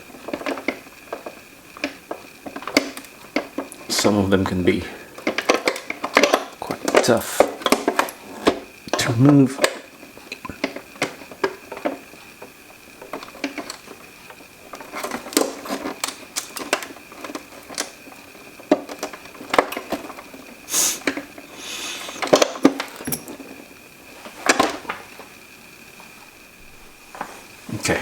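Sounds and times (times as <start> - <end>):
brief hiss: 20.7 - 22.4
screwdriver clicking and scraping: 20.7 - 23.3.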